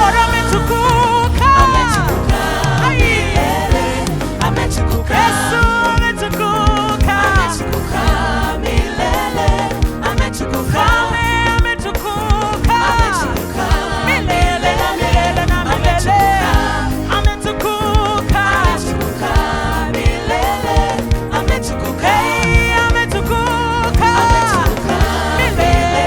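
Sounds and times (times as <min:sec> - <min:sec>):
band with steady beat: 0:00.0 - 0:26.0
people singing gospel: 0:00.0 - 0:26.0.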